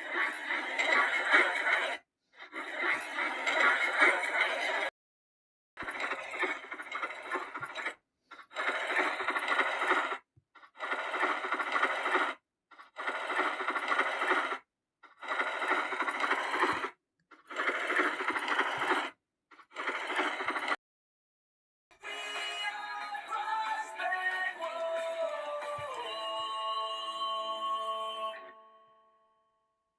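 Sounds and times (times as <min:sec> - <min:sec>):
thin rapid mechanical clatter: 0:13.0 - 0:14.6, 0:15.2 - 0:19.1.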